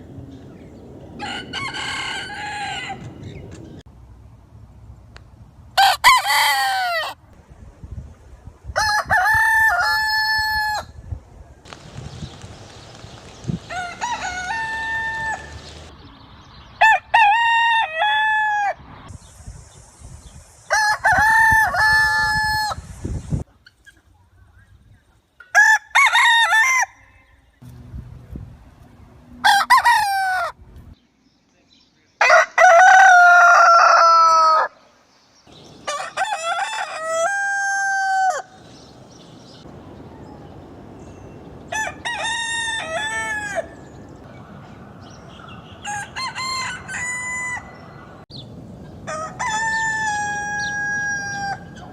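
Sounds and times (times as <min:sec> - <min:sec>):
rooster crowing: 0:01.2 - 0:03.1, 0:05.8 - 0:07.2, 0:08.8 - 0:10.9, 0:13.6 - 0:15.9, 0:25.6 - 0:27.4, 0:29.4 - 0:30.6, 0:32.2 - 0:34.8, 0:35.8 - 0:38.6, 0:41.7 - 0:44.0, 0:45.6 - 0:48.2, 0:49.0 - 0:51.9.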